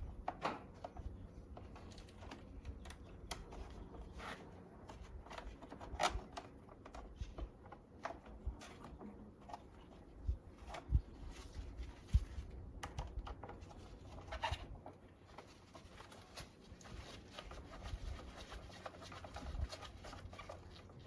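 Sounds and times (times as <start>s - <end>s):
hands clicking and rustling cables: 0.0s - 21.0s.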